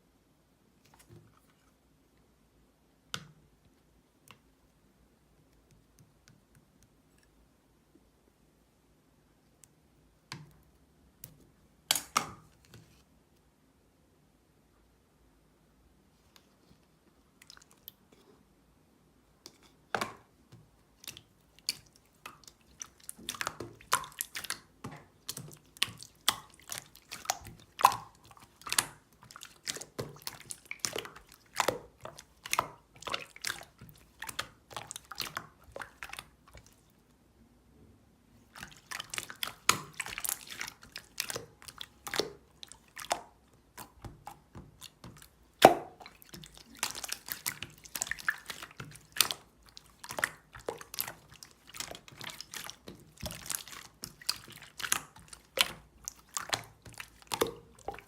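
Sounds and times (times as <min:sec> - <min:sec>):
wet clicks and smacks: 0:09.5 - 0:12.8, 0:20.0 - 0:36.9, 0:38.5 - 0:58.0.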